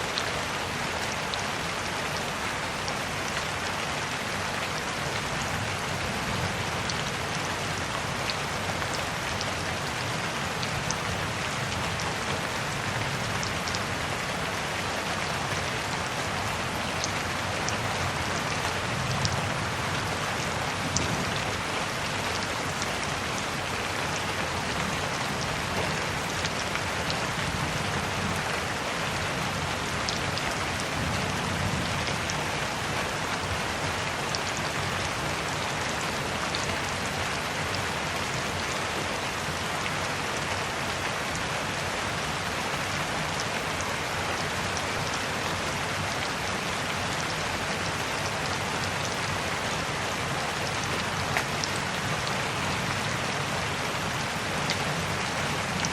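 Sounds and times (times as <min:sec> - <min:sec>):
steady rainfall: 0:00.0 - 0:55.9
raindrops ticking on a surface: 0:00.1 - 0:55.9.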